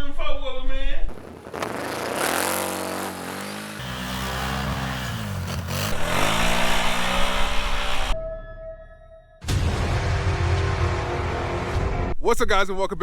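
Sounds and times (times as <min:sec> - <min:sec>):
atv engine revving: 0:01.1 - 0:08.2.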